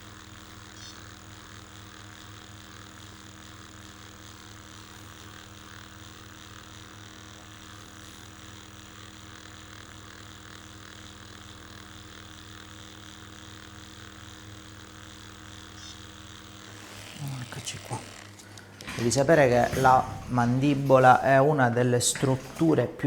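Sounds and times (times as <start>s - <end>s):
vibration device buzzing: 0.0s - 23.0s.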